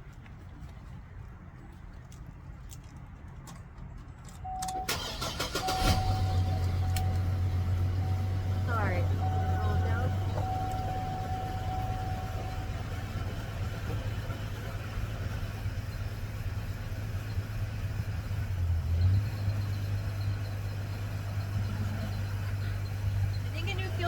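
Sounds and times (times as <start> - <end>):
car engine idling: 4.5 - 24.0
thin steady whine: 5.6 - 24.0.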